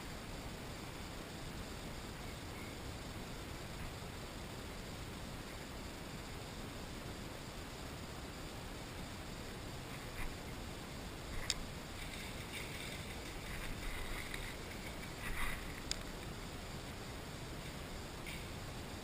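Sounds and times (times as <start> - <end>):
rustling: 11.2 - 16.4.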